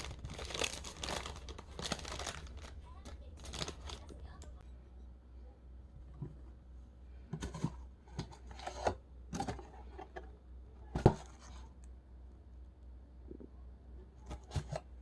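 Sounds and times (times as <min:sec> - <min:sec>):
packaging snapping: 0:00.0 - 0:02.8.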